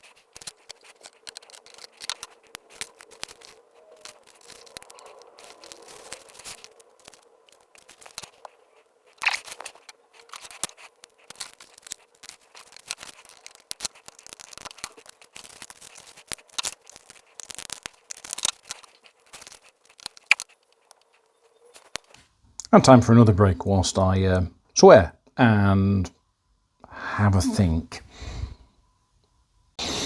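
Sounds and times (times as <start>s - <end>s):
hard plastic parts clicking: 0.0s - 8.5s
plastic scraping: 0.0s - 22.2s
faint steady hum: 0.0s - 30.0s.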